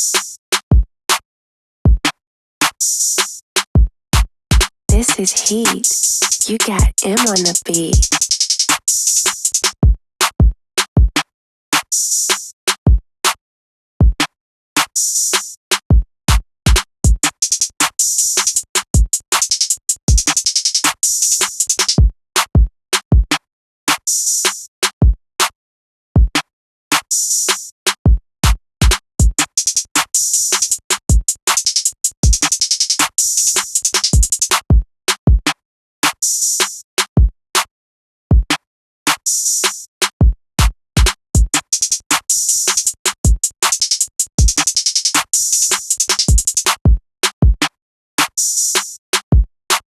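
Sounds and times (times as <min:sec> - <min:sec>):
snare drum: 0:04.6 - 0:09.7, 0:19.3 - 0:22.0, 0:28.8 - 0:34.6, 0:40.6 - 0:46.8
fast hi-hat rolls: 0:41.7 - 0:46.7.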